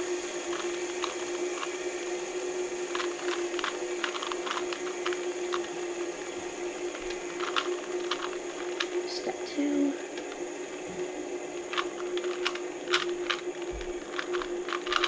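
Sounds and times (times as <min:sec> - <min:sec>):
steady hum: 0:00.0 - 0:15.0
puzzle cube clicking: 0:02.9 - 0:05.7, 0:06.9 - 0:09.0, 0:11.6 - 0:15.0.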